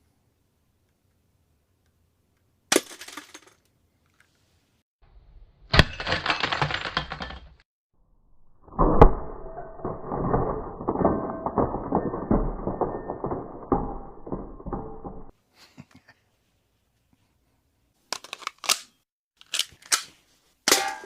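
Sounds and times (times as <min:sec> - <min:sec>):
glass breaking and clattering: 0:05.7 - 0:07.6, 0:08.8 - 0:15.3.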